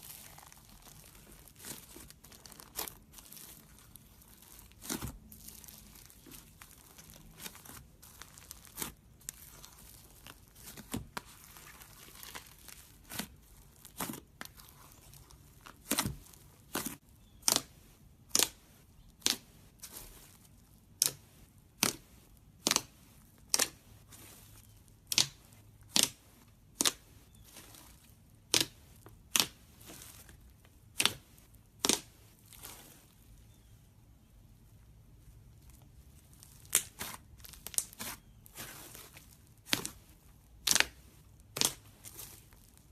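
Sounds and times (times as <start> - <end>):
faint crinkly rustle: 0.0 - 17.1, 32.3 - 42.9.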